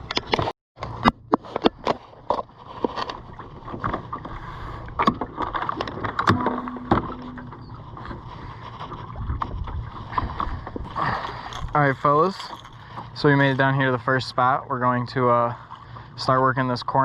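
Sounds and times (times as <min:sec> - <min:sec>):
boat running on water: 0:00.0 - 0:17.0
boat knocking and rattling: 0:00.3 - 0:13.7
low hum: 0:06.1 - 0:11.6.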